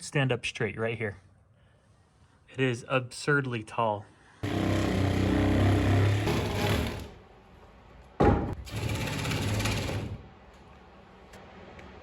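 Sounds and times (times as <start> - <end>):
small motor running: 4.4 - 7.1, 8.7 - 10.2.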